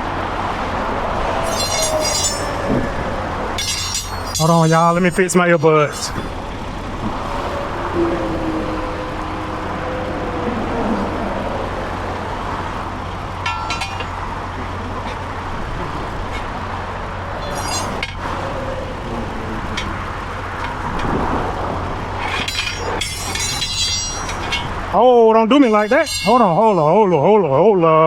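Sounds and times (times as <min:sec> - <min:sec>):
traffic rumble: 0:00.0 - 0:28.0
short metallic clinks: 0:01.4 - 0:03.0, 0:03.6 - 0:06.4, 0:13.5 - 0:14.2, 0:17.4 - 0:18.2, 0:22.2 - 0:25.0, 0:25.6 - 0:27.0.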